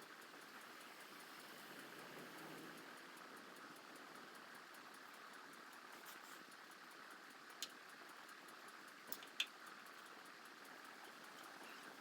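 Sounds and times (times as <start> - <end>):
small clicks from handled wires: 4.7 - 12.0.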